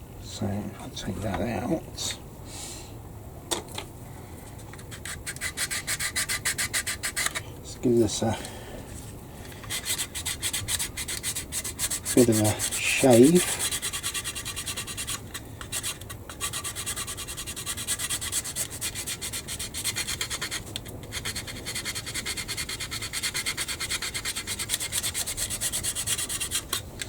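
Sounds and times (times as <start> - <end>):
hand sanding plastic: 4.7 - 8.1, 9.5 - 27.0.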